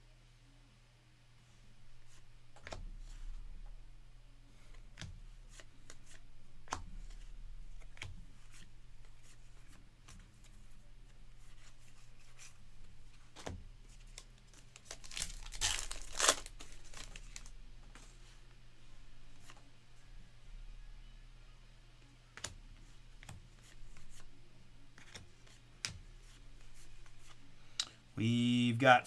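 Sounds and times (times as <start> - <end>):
cards clicking and tapping: 2.6 - 3.3, 22.4 - 24.3, 24.9 - 28.0
wrapper tearing and crinkling: 14.7 - 17.5.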